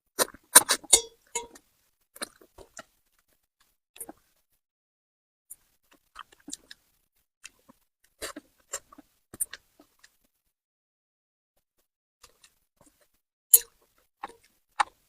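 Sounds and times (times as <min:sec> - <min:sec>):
wet chewing and mouth clicks: 0:00.2 - 0:01.6, 0:02.2 - 0:03.0, 0:05.9 - 0:10.2, 0:12.2 - 0:15.0.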